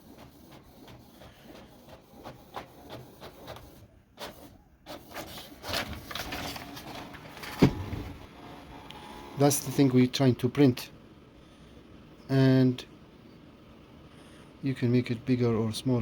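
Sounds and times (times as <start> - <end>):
printer mechanism clicking and whirring: 0.0 - 10.8.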